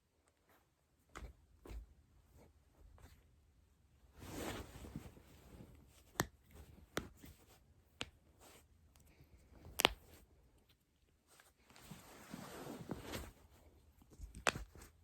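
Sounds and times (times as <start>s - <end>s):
rustle of clothing: 4.1s - 7.6s, 11.2s - 15.0s.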